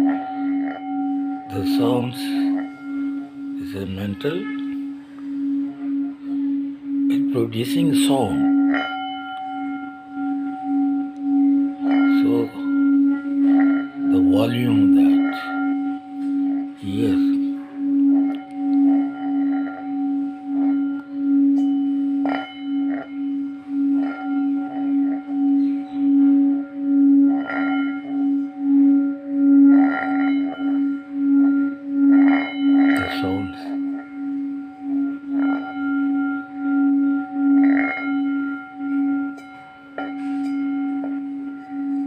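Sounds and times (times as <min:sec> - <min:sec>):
resonating metal ringing hum: 0:00.0 - 0:42.0.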